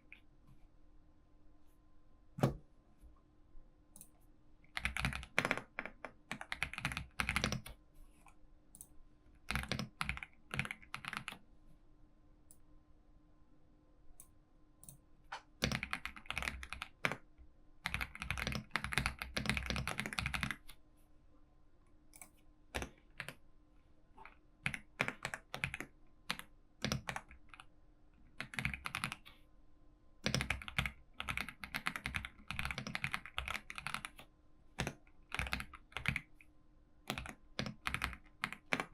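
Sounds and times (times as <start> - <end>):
computer keyboard typing: 4.7 - 7.8, 8.8 - 11.4, 14.8 - 20.8, 22.2 - 23.4, 24.2 - 27.7, 28.3 - 29.2, 30.2 - 36.3, 37.1 - 38.9.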